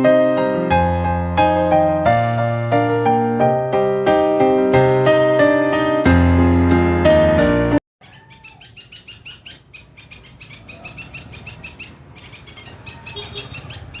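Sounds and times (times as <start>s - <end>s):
bird chirping: 8.0s - 14.0s
lower gliding bird call: 8.0s - 14.0s.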